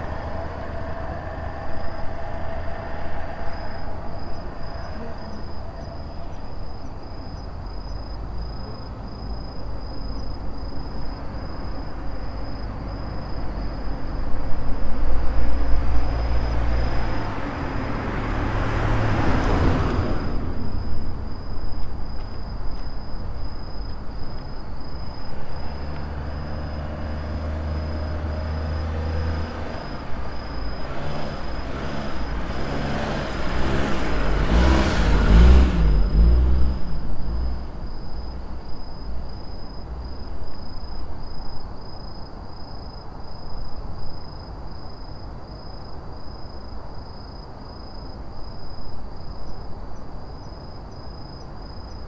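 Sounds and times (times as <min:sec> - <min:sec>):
motor vehicle passing: 0:00.0 - 0:06.8, 0:11.3 - 0:22.1, 0:24.9 - 0:40.3
crickets chirping: 0:00.0 - 0:52.0.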